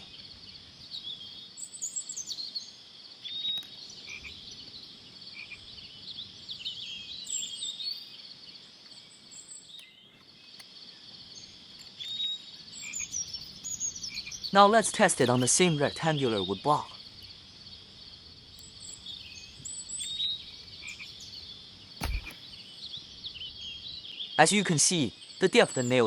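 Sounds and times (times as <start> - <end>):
short bird chirps: 22.0 - 24.4.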